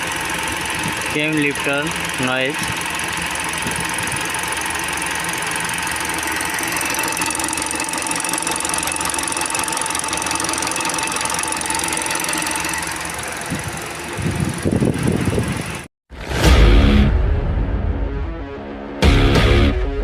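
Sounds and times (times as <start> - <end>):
rapid tappet ticking: 0.0 - 13.8
car engine idling: 0.0 - 15.9.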